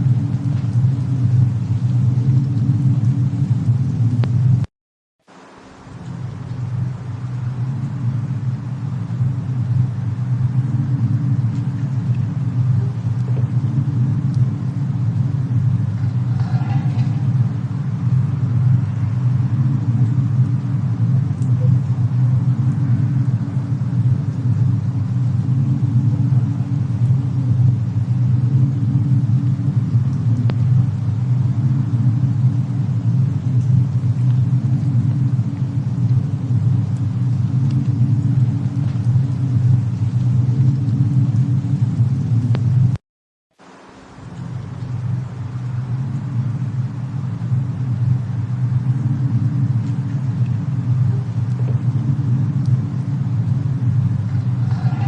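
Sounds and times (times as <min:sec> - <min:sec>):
low rumble: 0:00.0 - 0:04.7, 0:05.4 - 0:43.0, 0:44.1 - 0:55.0
faint crackling ticks: 0:00.2 - 0:04.7, 0:09.1 - 0:17.5, 0:19.6 - 0:27.7, 0:29.4 - 0:31.3, 0:32.4 - 0:42.9, 0:47.4 - 0:55.0.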